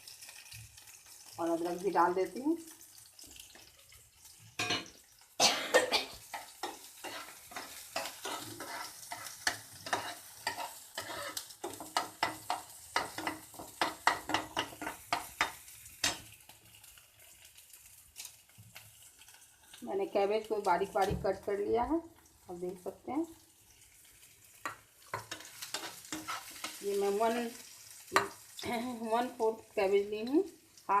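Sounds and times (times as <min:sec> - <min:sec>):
food sizzling in hot oil: 0:00.0 - 0:31.0
spoon scraping a pan: 0:03.4 - 0:05.0, 0:06.0 - 0:17.5, 0:23.7 - 0:29.6.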